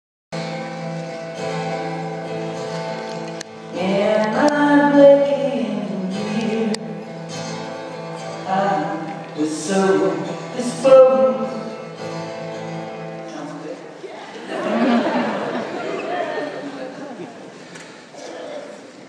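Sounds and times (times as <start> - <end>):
guitar playing held chords: 0.4 - 13.6.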